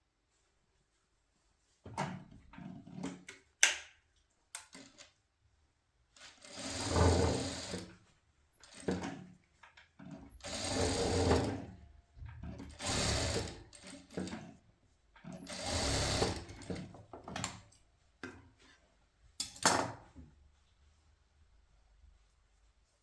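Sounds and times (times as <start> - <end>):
sewing machine stitching: 6.2 - 8.0, 8.6 - 9.4, 10.0 - 11.8, 12.4 - 14.6, 15.3 - 17.0.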